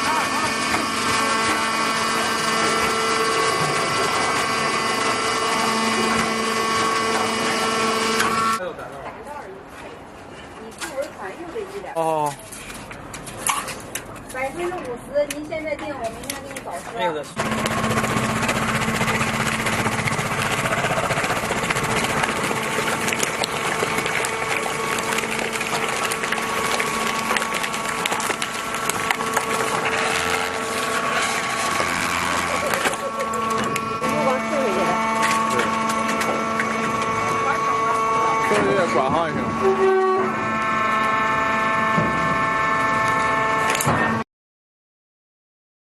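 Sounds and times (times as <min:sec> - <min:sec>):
hydraulic baler machine humming: 0:00.0 - 0:08.6, 0:17.4 - 0:44.2.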